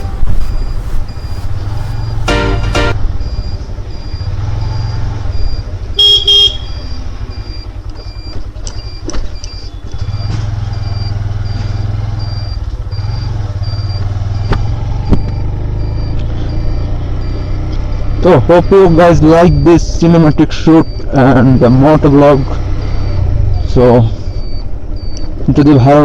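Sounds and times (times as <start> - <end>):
wind noise: 0.0 - 2.3
vehicle horn blast: 0.0 - 3.0, 6.0 - 6.8
motorcycle engine rumble: 0.0 - 26.0.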